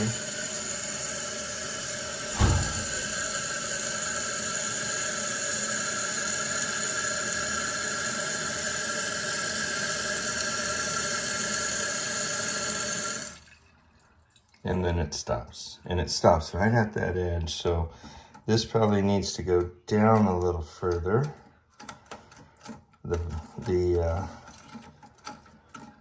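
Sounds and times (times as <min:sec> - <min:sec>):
toilet tank refilling: 0:00.0 - 0:15.2, 0:23.1 - 0:26.0
low thump: 0:02.3 - 0:03.4.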